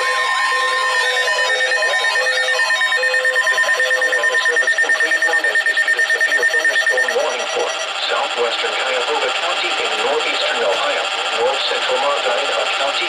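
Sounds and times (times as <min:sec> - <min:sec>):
steady high alert tone: 0:00.0 - 0:07.9.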